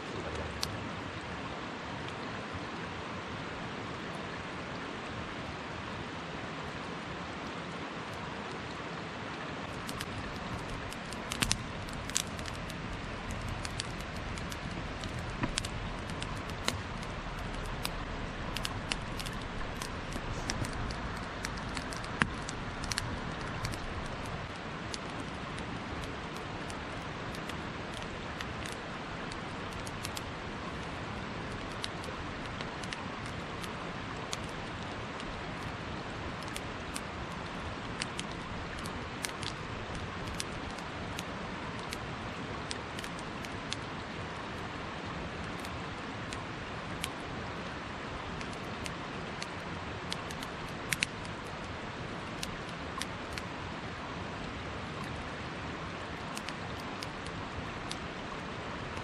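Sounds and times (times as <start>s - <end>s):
steady fire hiss: 7.8s - 59.0s
campfire crackling and popping: 9.7s - 35.5s.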